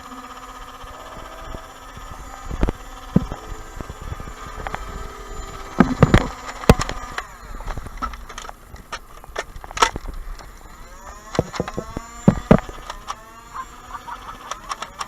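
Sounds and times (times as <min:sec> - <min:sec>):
toy blaster flywheel whine: 0:00.0 - 0:15.0
sharp clicks and knocks: 0:01.5 - 0:13.3.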